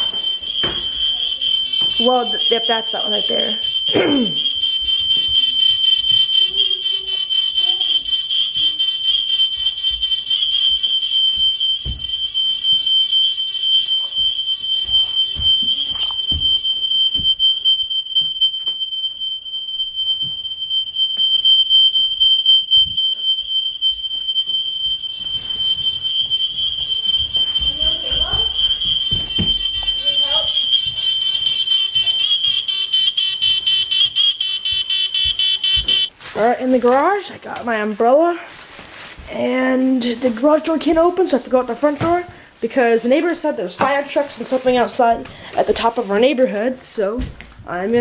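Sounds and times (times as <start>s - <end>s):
smoke alarm shrill tone: 0.0s - 36.8s.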